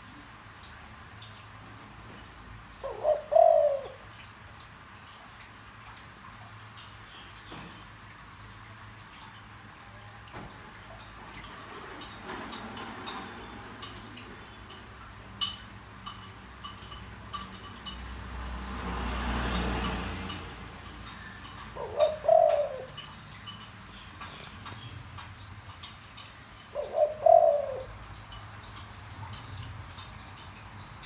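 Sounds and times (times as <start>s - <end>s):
dove cooing: 2.7s - 4.2s, 16.8s - 25.2s, 26.2s - 29.4s.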